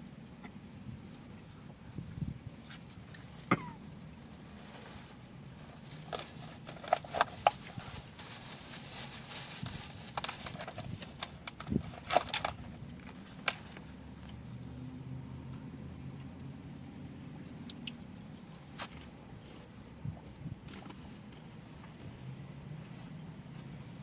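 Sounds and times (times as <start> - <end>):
food container clicks and crinkles: 5.7 - 13.9.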